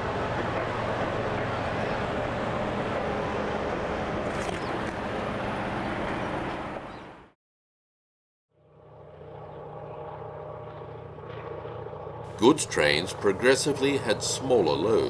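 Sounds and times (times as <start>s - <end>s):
diesel train running: 0.0s - 4.3s, 12.3s - 15.0s
quiet diesel engine drone: 0.0s - 7.3s, 8.6s - 15.0s.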